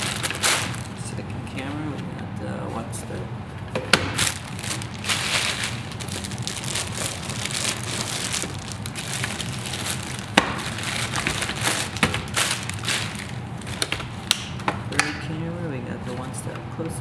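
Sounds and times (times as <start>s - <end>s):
packaging rustling and crackling: 0.0s - 1.0s, 4.0s - 14.6s.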